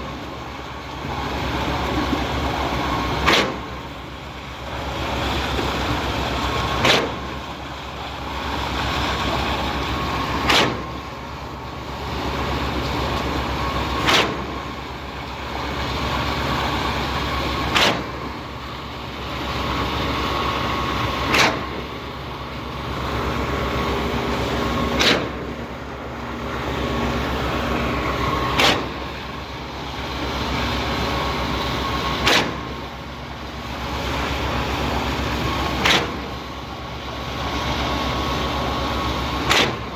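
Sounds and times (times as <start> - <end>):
concrete pump engine drone: 0.0 - 39.9
sharp valve clunk: 3.2 - 3.7, 6.8 - 7.2, 10.4 - 10.8, 25.0 - 25.5, 28.5 - 29.1, 32.2 - 32.7, 35.8 - 36.3, 39.4 - 39.8.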